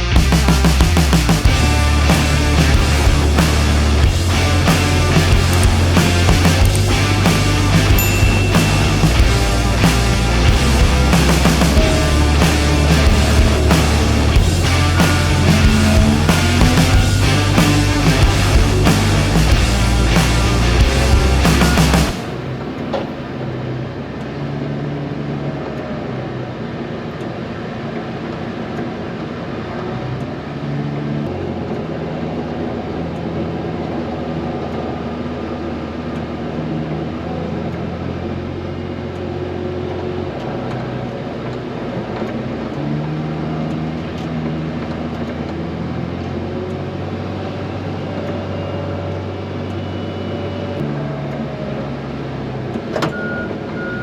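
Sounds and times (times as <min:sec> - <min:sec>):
heavy vehicle diesel engine: 0:00.0 - 0:24.2.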